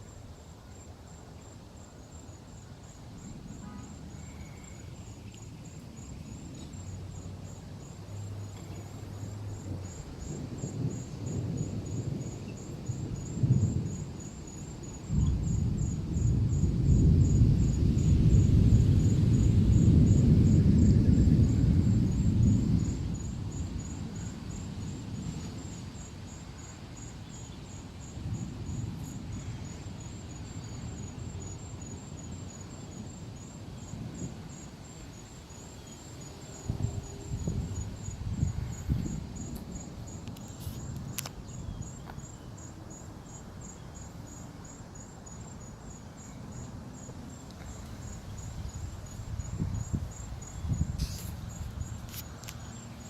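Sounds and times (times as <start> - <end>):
insects chirping: 0.0 - 53.0
distant thunder rumbling: 3.1 - 26.4, 36.1 - 44.2.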